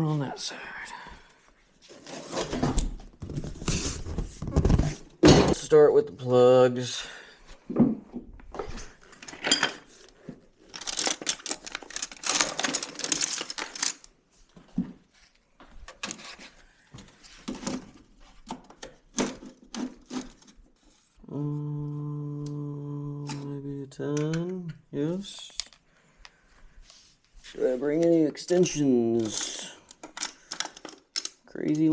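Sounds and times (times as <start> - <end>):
metal tools clinking and rattling: 9.1 - 9.9, 10.8 - 14.1, 29.1 - 31.4.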